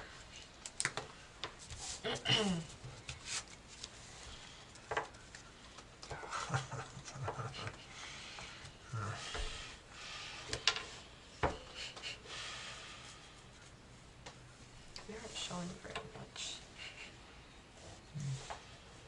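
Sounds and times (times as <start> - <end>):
playing cards handled on a table: 2.8 - 4.0.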